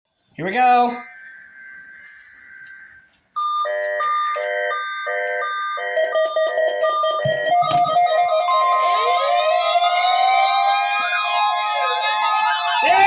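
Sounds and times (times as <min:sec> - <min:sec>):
faint data tones: 0:00.4 - 0:03.4
weather radio electronic alarm: 0:00.4 - 0:13.0
steady electronic tone: 0:00.8 - 0:13.0.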